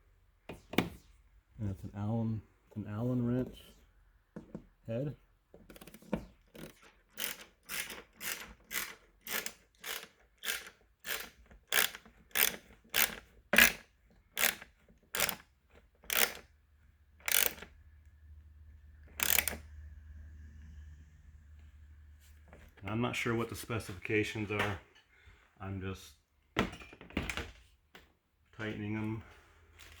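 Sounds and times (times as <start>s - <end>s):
hand ratchet clicking: 5.8s - 15.5s, 16.1s - 16.5s, 17.2s - 17.8s, 19.2s - 19.7s.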